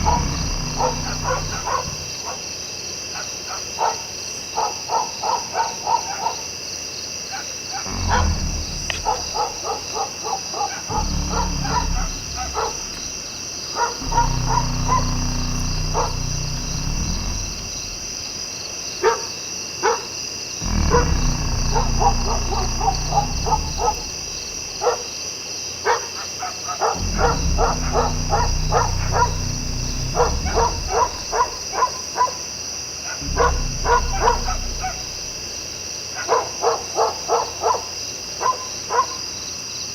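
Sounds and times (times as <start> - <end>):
low droning rumble: 0.0 - 2.2, 7.9 - 9.9, 10.9 - 18.9, 20.6 - 25.0, 27.0 - 31.9, 33.2 - 35.8
steady high buzz: 0.0 - 2.3, 7.9 - 10.0, 10.9 - 19.0, 20.6 - 25.0, 27.0 - 32.0, 33.2 - 35.9.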